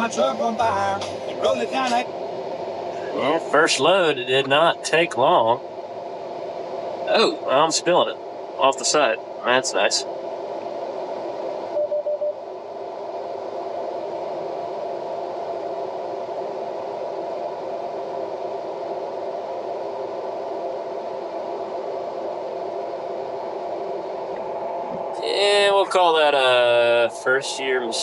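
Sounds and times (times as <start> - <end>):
combine harvester engine drone: 0.0 - 28.0
short beeps: 11.8 - 12.4.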